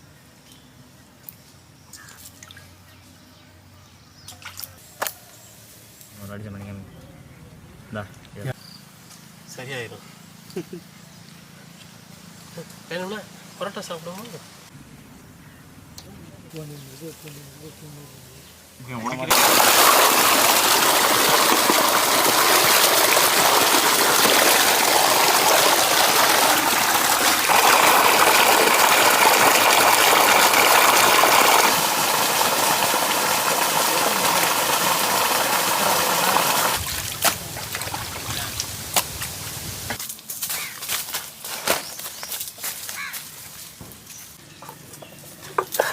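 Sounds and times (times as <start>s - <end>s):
water gushing: 19.2s - 40.0s.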